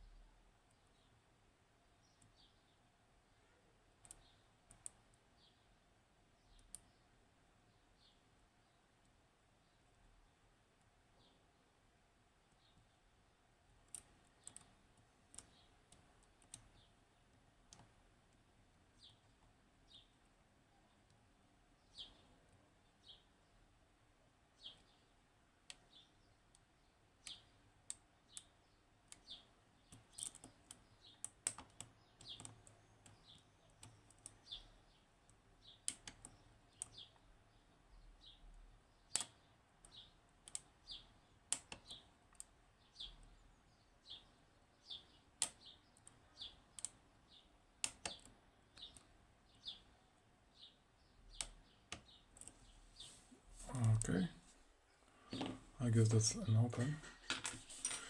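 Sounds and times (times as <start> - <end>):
lock picks clicking in a lock: 29.1 - 34.6.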